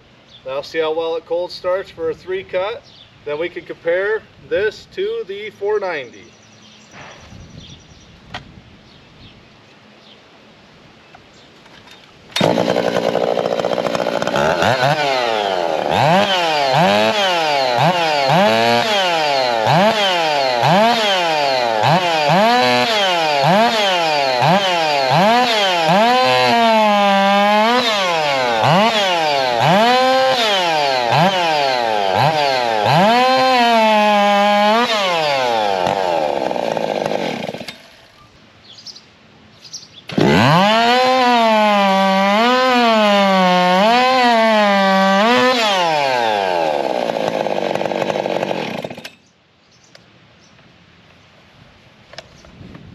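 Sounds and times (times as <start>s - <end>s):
chainsaw revving: 12.3s - 38.2s, 40.1s - 49.2s.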